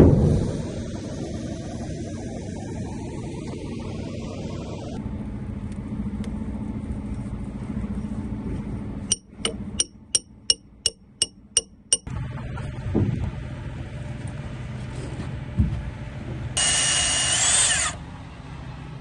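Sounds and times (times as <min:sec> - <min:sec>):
engine running: 0:00.0 - 0:19.0
sharp ringing clicks: 0:09.1 - 0:12.1.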